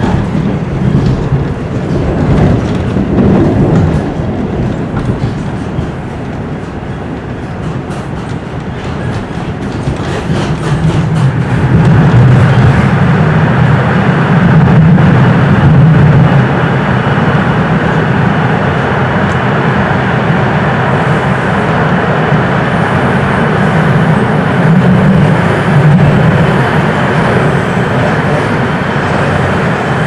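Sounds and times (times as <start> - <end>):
subway train rumbling: 0.0 - 30.0.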